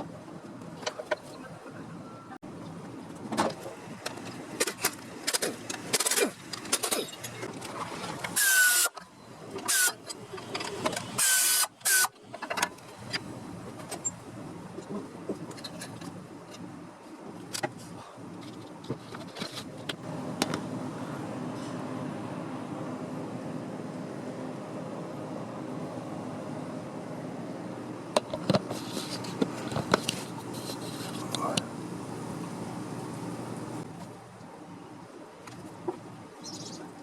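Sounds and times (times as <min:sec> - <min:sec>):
power tool bursts with whine: 0:08.4 - 0:09.0.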